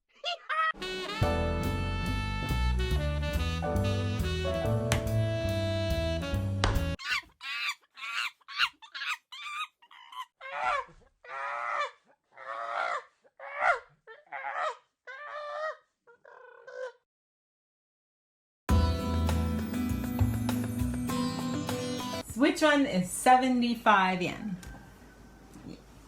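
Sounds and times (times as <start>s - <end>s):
hen clucking and squawking: 7.0s - 10.8s.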